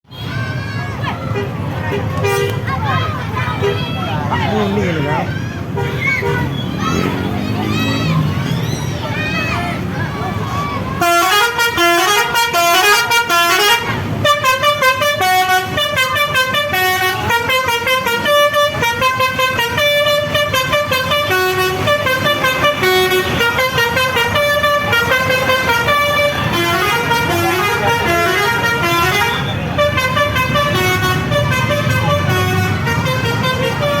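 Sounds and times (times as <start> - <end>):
bus engine rumble: 0.1 - 34.0
multi-tone bus air horn tune: 1.4 - 2.6, 5.7 - 7.2, 11.0 - 34.0.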